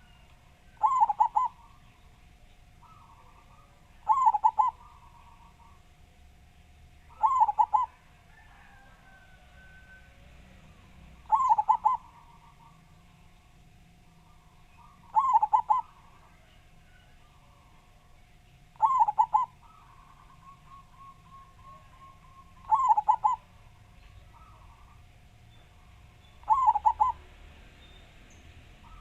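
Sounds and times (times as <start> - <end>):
dove cooing: 0.0 - 2.0, 2.8 - 5.9, 7.1 - 10.0, 11.1 - 13.0, 14.2 - 17.8, 18.7 - 25.1, 25.8 - 27.4
softer cooing of other doves: 0.7 - 1.8, 2.8 - 5.8, 7.1 - 10.0, 11.2 - 12.8, 14.8 - 17.7, 18.8 - 23.6, 26.4 - 27.3.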